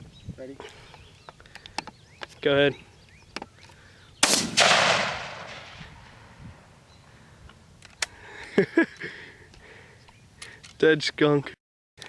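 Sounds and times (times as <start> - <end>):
rifle shot with echo: 4.2 - 6.4.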